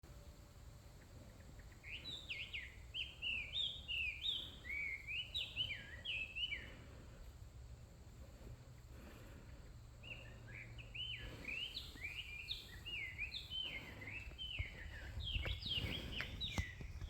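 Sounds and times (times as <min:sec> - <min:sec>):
low outdoor rumble: 0:00.0 - 0:17.0
songbird whistling: 0:01.8 - 0:06.7, 0:10.0 - 0:17.0.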